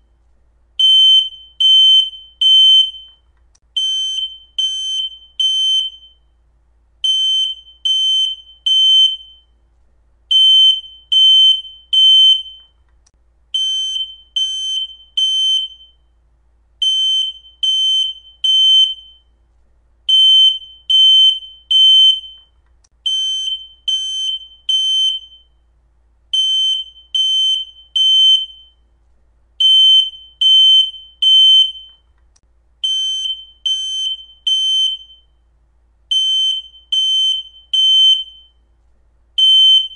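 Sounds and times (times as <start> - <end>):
smoke alarm beeping: 0.8 - 6.3, 7.0 - 9.6, 10.3 - 12.8, 13.6 - 16.1, 16.8 - 19.4, 20.1 - 25.6, 26.4 - 28.8, 29.6 - 32.1, 32.8 - 35.4, 36.1 - 38.7, 39.4 - 39.9.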